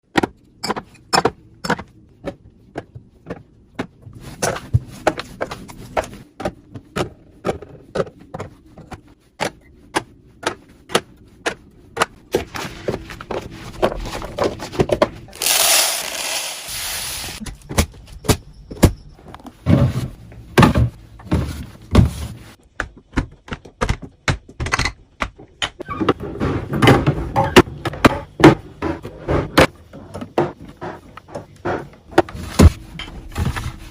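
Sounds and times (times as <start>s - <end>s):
containers clicking and scraping: 15.4s - 17.4s.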